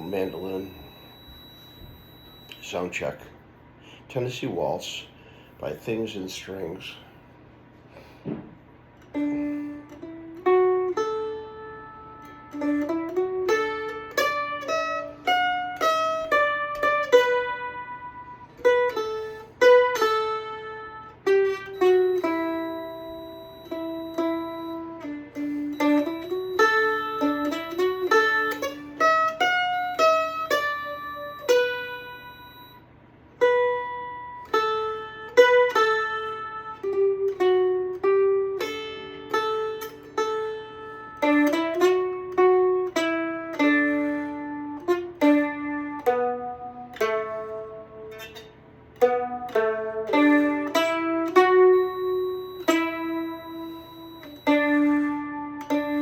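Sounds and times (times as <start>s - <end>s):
mandolin waltz melody: 0.0s - 2.8s, 9.1s - 32.7s, 33.3s - 56.0s.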